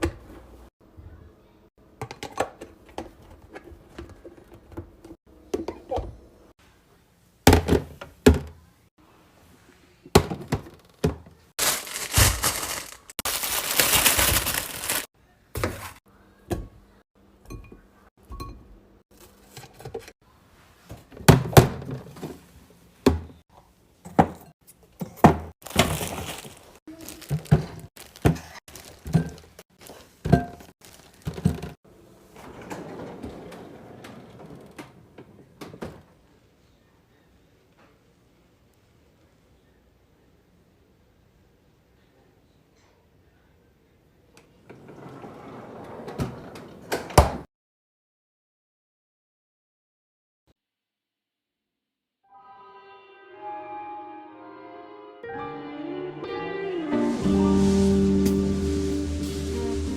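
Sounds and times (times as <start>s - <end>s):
items knocking and clunking: 2.0s - 6.2s, 7.5s - 8.6s, 10.1s - 16.8s, 19.2s - 20.2s, 20.9s - 22.4s, 23.0s - 23.4s, 24.0s - 31.8s.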